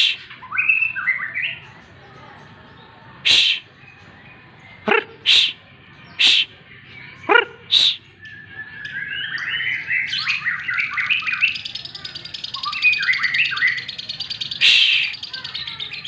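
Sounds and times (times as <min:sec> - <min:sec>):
songbird singing whistled phrases: 0:00.0 - 0:01.6, 0:07.7 - 0:16.0.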